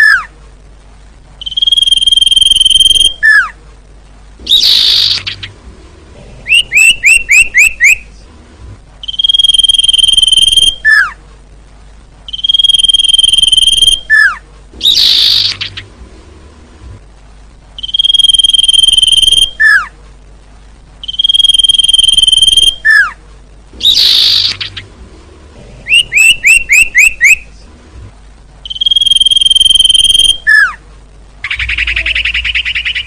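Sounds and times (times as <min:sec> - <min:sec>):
bird whistling calls: 0:01.4 - 0:03.6, 0:04.5 - 0:05.5, 0:06.5 - 0:08.0, 0:09.0 - 0:11.2, 0:12.3 - 0:15.8, 0:17.8 - 0:19.9, 0:21.0 - 0:23.2, 0:23.8 - 0:24.8, 0:25.9 - 0:27.5, 0:28.7 - 0:30.8, 0:31.4 - 0:33.0
rising bird chirps: 0:01.4 - 0:03.6, 0:04.4 - 0:05.6, 0:06.4 - 0:08.1, 0:09.0 - 0:11.2, 0:12.3 - 0:16.0, 0:17.8 - 0:19.9, 0:21.0 - 0:23.2, 0:23.8 - 0:25.0, 0:25.8 - 0:27.6, 0:28.6 - 0:30.8, 0:31.4 - 0:33.0.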